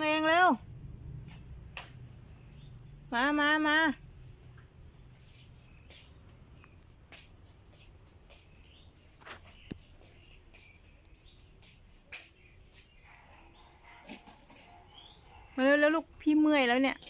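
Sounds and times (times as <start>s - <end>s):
insects chirring: 0.0s - 17.0s
faint clicks and rustles: 4.3s - 17.0s.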